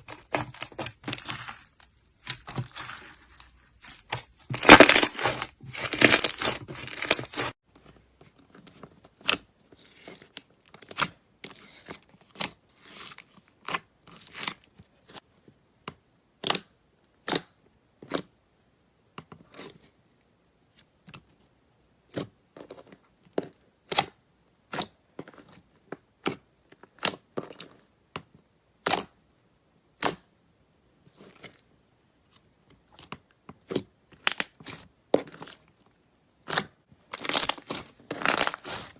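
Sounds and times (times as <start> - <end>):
slime crackling and popping: 37.2 - 38.9.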